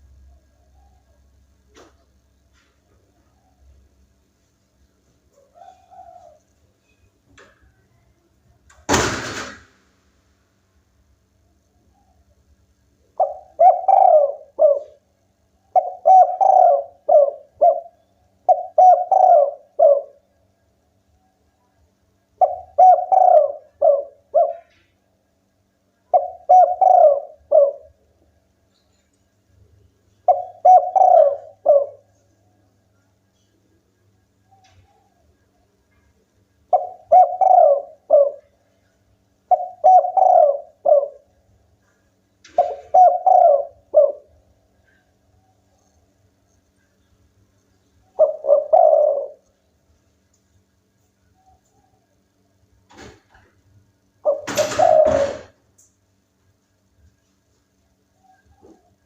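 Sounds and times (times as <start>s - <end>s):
dove cooing: 0.0s - 3.7s, 5.3s - 6.5s, 13.1s - 20.3s, 22.4s - 24.9s, 26.1s - 28.1s, 30.2s - 32.4s, 36.7s - 46.2s, 48.0s - 49.5s, 54.2s - 55.6s, 58.2s - 59.0s.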